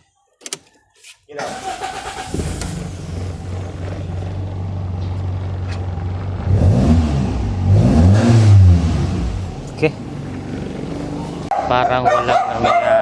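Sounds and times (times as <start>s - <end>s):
car engine idling and revving: 1.5s - 11.5s.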